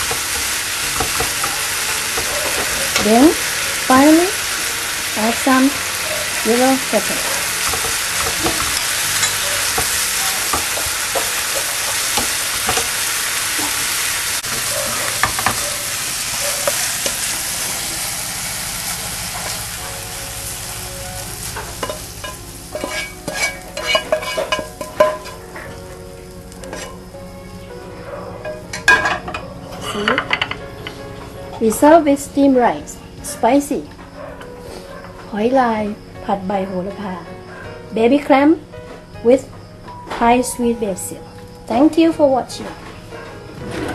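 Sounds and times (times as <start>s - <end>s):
food sizzling in a pan: 0.0s - 29.4s
faint music: 0.0s - 43.9s
spatula scraping a pan: 5.8s - 13.0s, 21.8s - 25.4s, 26.6s - 27.0s.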